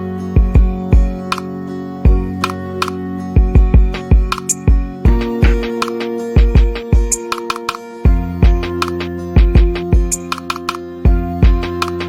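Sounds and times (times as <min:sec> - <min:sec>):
electronic beat with held chords: 0:00.0 - 0:12.0.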